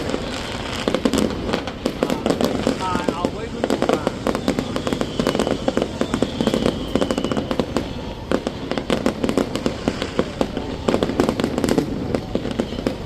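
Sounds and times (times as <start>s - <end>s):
fireworks popping and banging: 0.0s - 13.0s
faint falling whistle: 4.2s - 8.8s.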